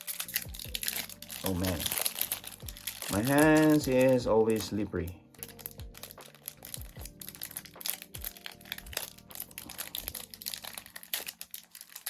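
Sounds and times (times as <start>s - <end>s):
foil pack crinkling: 0.0s - 12.0s.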